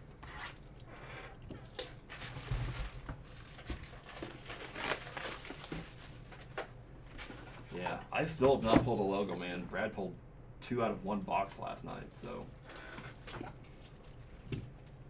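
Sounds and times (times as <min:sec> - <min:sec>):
plastic wrapping crinkling and tearing: 0:00.5 - 0:06.6, 0:12.2 - 0:15.0.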